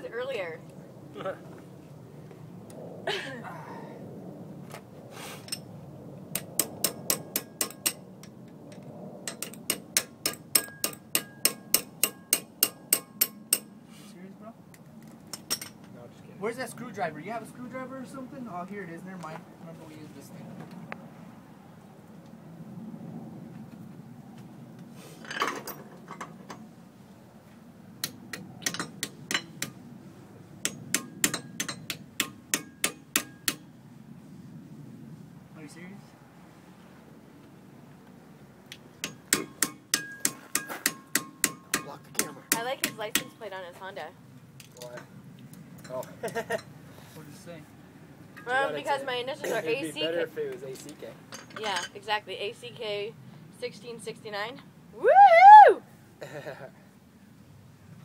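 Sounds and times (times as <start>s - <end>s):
hammer striking metal: 6.4s - 8.0s, 9.3s - 13.8s, 28.0s - 29.8s, 30.6s - 33.7s, 39.0s - 43.4s
hand tool tapping metal: 6.4s - 8.4s, 9.3s - 13.7s, 28.0s - 29.8s, 30.6s - 33.6s, 39.0s - 43.4s.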